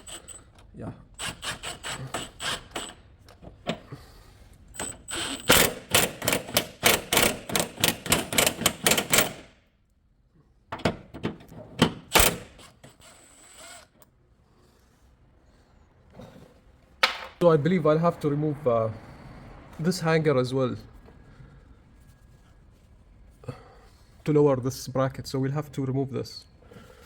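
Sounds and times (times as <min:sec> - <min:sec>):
ratchet wrench clicking: 0:04.8 - 0:09.4.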